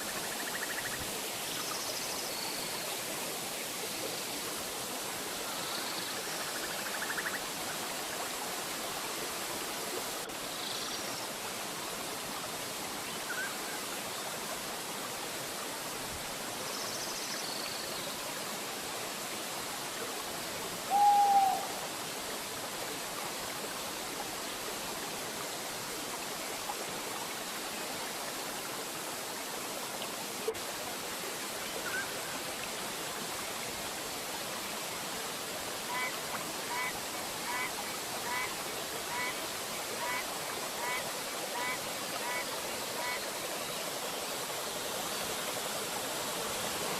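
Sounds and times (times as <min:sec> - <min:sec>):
faint short bird calls: 0:20.9 - 0:21.8
low bird call: 0:20.9 - 0:21.8
waterfall rushing: 0:34.9 - 0:46.9.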